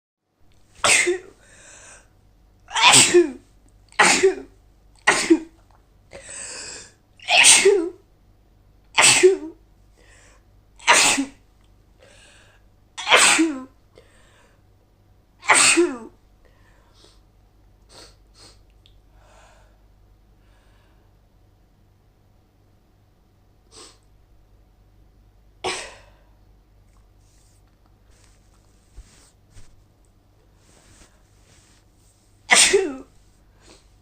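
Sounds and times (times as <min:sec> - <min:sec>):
woman sneezing: 0:00.8 - 0:01.3, 0:02.7 - 0:03.4, 0:04.0 - 0:05.5, 0:07.2 - 0:08.0, 0:09.0 - 0:09.6, 0:10.8 - 0:11.4, 0:13.0 - 0:13.7, 0:15.4 - 0:16.1, 0:25.6 - 0:26.2, 0:32.5 - 0:33.1.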